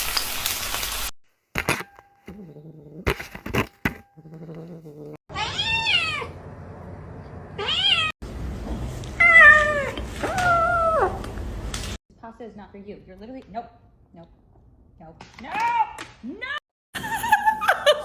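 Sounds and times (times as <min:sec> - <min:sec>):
cat meowing: 0:05.3 - 0:06.4.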